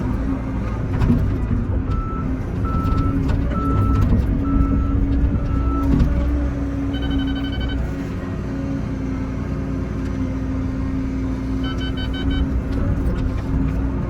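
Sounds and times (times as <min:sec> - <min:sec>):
excavator engine running: 0:00.0 - 0:14.0
alarm beeping: 0:06.9 - 0:07.8, 0:11.6 - 0:12.5.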